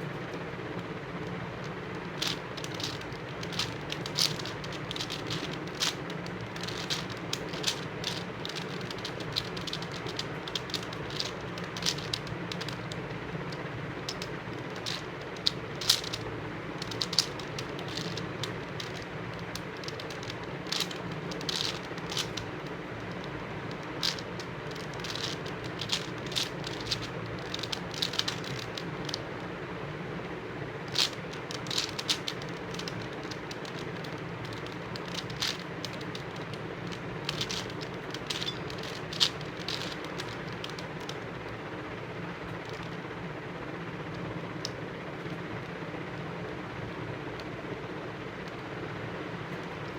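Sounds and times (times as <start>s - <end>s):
steady background hiss: 0.0s - 49.9s
puzzle cube layers clicking: 1.9s - 29.2s, 30.9s - 41.2s.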